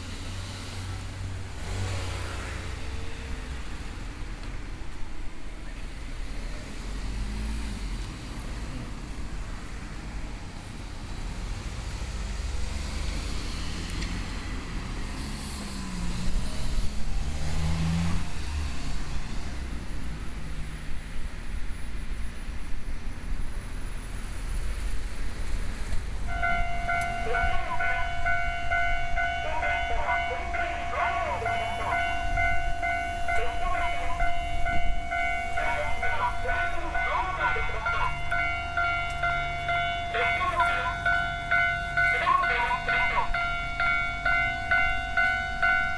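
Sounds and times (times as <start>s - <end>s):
road traffic rumbling: 0.0s - 45.9s
vehicle passing: 11.4s - 20.0s, 24.0s - 45.9s
level crossing warning alarm: 26.2s - 45.9s.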